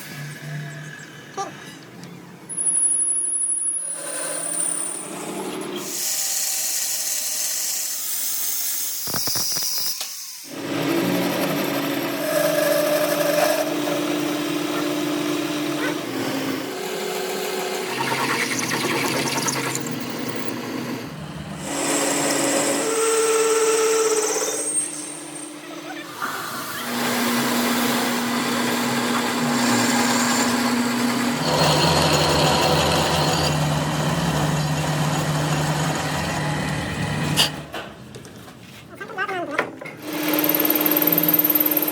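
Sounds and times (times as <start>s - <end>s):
loud cutting noise: 5.0s - 37.7s.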